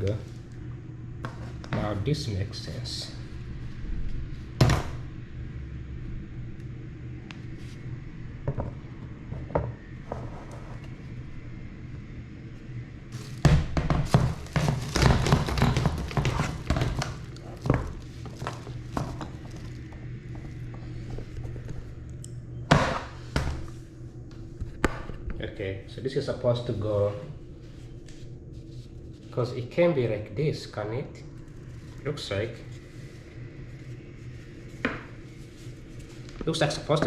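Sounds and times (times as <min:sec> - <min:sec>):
steady low hum: 0:00.0 - 0:37.0
chair parts knocking and clattering: 0:13.4 - 0:19.6.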